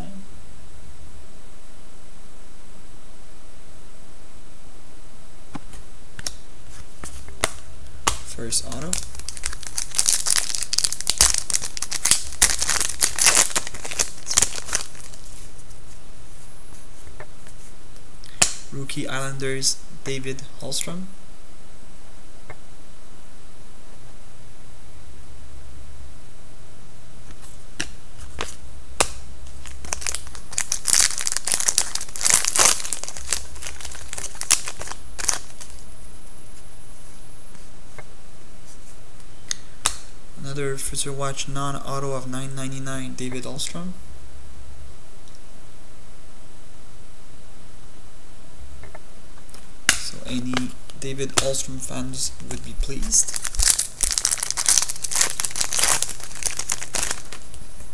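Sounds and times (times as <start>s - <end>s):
plastic packaging crinkling: 7.0s - 15.9s, 29.4s - 35.9s, 52.4s - 57.9s.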